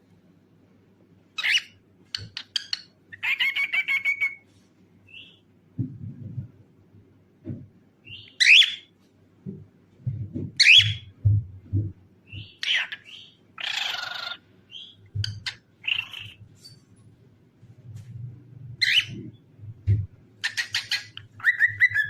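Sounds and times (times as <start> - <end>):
cockatiel whistling and calling: 1.4 - 4.4, 8.1 - 8.9, 10.6 - 11.1, 18.8 - 19.3, 20.4 - 22.0.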